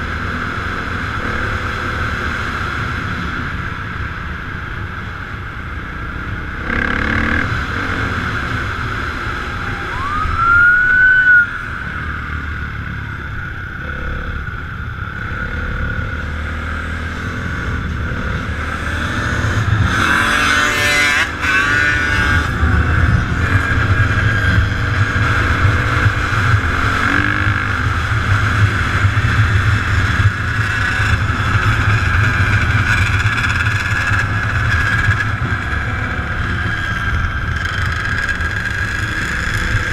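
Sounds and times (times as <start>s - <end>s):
motorcycle engines revving: 0.0s - 39.9s
short rising whine: 9.2s - 13.2s.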